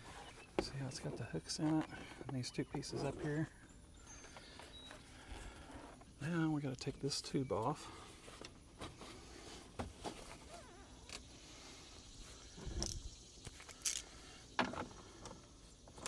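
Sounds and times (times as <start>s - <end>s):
light clicks and knocks of tools: 12.6s - 16.0s.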